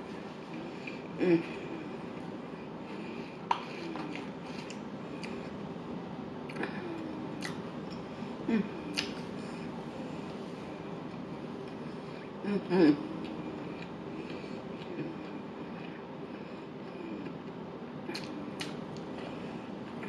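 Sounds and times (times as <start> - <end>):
breathy vocal sounds: 0.4 - 5.5, 6.5 - 10.9, 11.7 - 17.4
mouth clicks and smacks chewing: 8.9 - 9.2.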